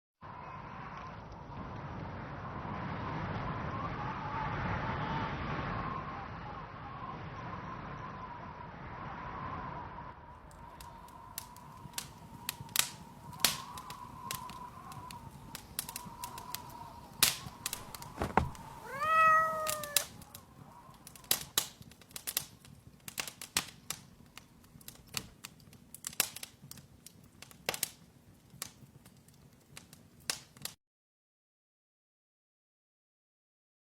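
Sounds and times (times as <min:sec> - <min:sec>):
cat meowing: 0:17.8 - 0:20.2.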